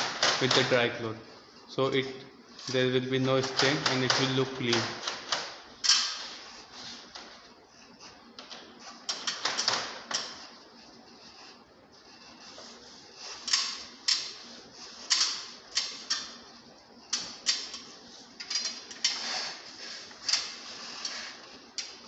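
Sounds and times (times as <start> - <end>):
cloth rubbing strokes: 10.4 - 15.6.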